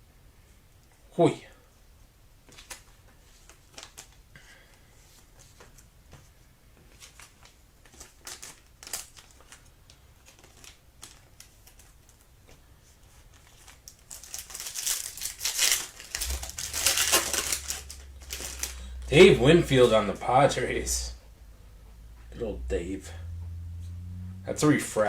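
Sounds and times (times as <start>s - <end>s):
cards clicking and rustling: 2.5s - 4.2s, 6.8s - 12.6s, 13.3s - 18.8s
card pack wrapper tearing: 7.9s - 9.6s, 13.4s - 18.9s.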